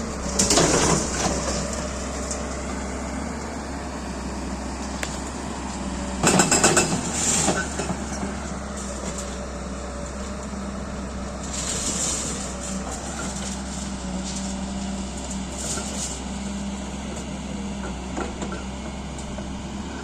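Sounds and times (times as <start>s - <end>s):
excavator diesel engine running: 0.0s - 20.0s
concrete crashing and clattering: 0.3s - 2.0s.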